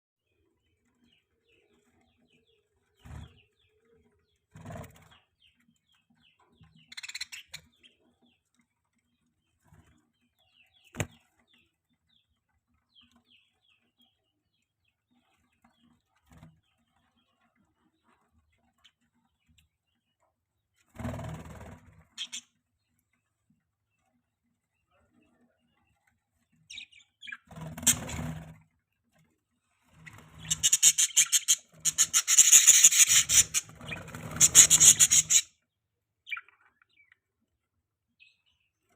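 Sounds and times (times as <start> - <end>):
budgies chattering: 6.7 - 8.0, 22.2 - 22.5, 30.0 - 35.5.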